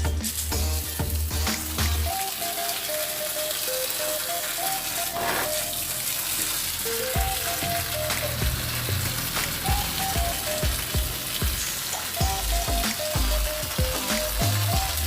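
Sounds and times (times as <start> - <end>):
crackling hiss: 0.0 - 15.0
simple melody over bass line: 12.2 - 15.0.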